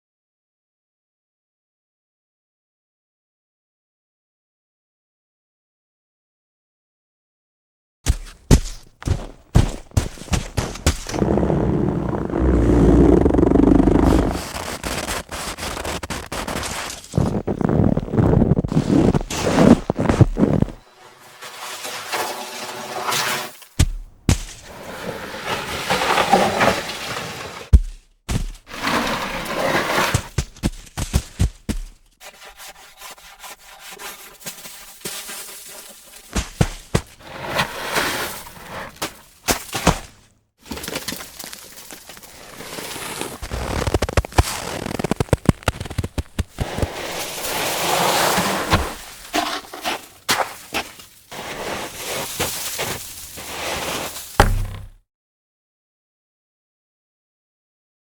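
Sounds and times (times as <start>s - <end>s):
thud on snow: 8.1s - 11.6s, 23.8s - 24.7s, 27.7s - 29.0s, 36.3s - 37.2s, 39.0s - 41.2s, 42.8s - 49.6s, 50.3s - 55.0s
sharp snow hits: 8.1s - 20.8s, 40.7s - 55.0s
snow crunching: 8.1s - 20.8s, 40.7s - 54.9s
hiss of snow being pushed: 11.2s - 16.7s, 46.6s - 54.4s.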